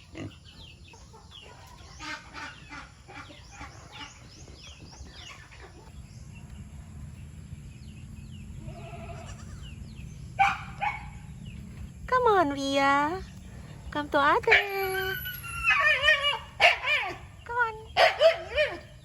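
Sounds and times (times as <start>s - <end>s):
farm animals calling: 0.0s - 19.0s
bleat-like call: 8.6s - 9.6s.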